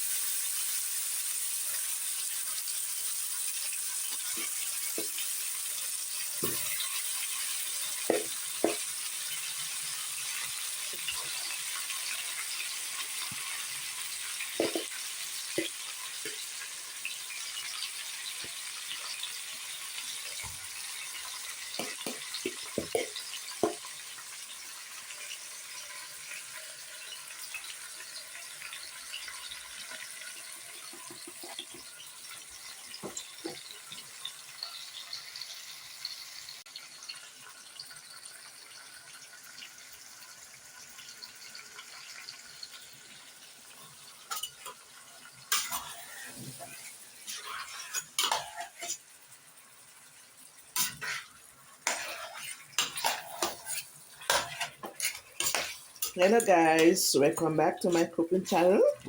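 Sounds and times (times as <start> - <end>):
food sizzling in a pot: 0.0 - 59.0
utensil clinking against pot: 47.3 - 49.0, 51.9 - 58.7.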